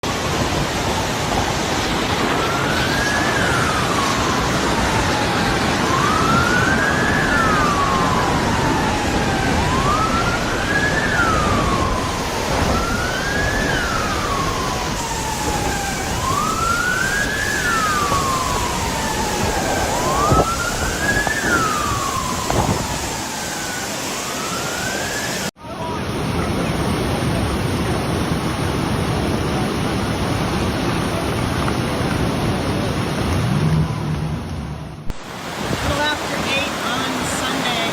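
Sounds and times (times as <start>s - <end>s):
loud steady rushing noise: 0.0s - 37.9s
siren wailing: 0.1s - 25.5s.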